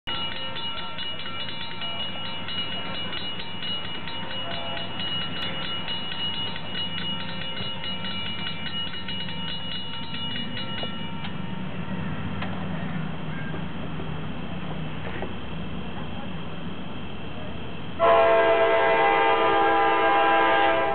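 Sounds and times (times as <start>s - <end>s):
crossing bells clanging: 0.0s - 13.6s
diesel locomotive rumble: 0.0s - 20.9s.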